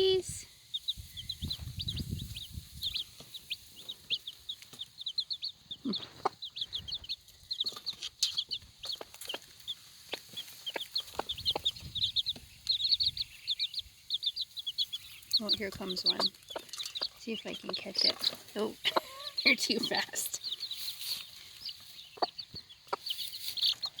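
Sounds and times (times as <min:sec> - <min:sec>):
chicks peeping: 0:00.0 - 0:24.0
hen clucking low: 0:05.1 - 0:07.2, 0:17.0 - 0:20.2.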